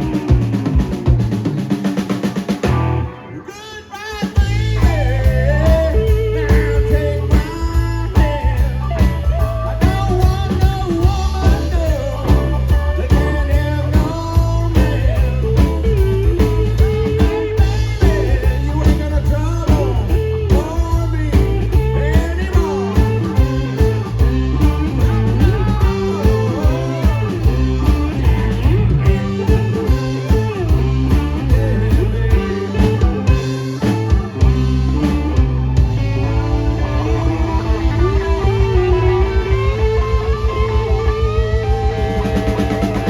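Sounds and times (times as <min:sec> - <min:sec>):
blues-rock band playing: 0:00.0 - 0:43.0
electric guitar lines: 0:00.0 - 0:43.0.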